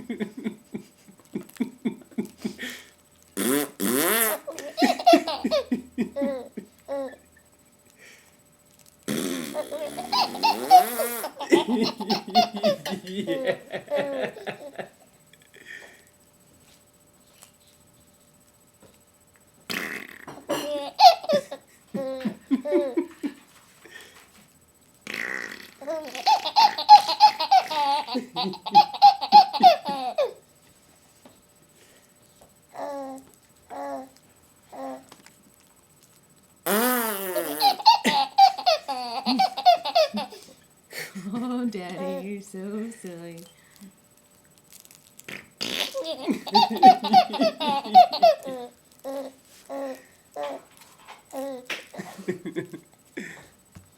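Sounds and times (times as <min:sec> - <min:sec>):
man blowing raspberry with lips: 0:01.4 - 0:04.6, 0:09.1 - 0:12.0, 0:19.7 - 0:20.8, 0:25.0 - 0:27.0, 0:36.6 - 0:38.3, 0:45.3 - 0:48.6
baby laughing: 0:04.2 - 0:07.2, 0:09.3 - 0:14.9, 0:20.5 - 0:23.2, 0:25.8 - 0:30.4, 0:36.7 - 0:40.4, 0:45.6 - 0:50.6.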